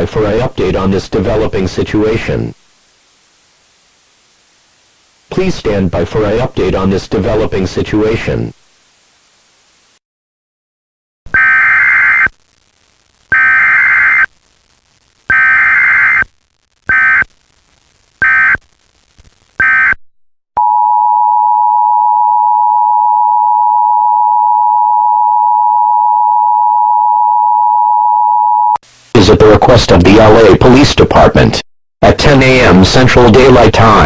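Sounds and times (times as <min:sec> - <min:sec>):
buzzy digital data bursts: 0:11.3 - 0:20.0.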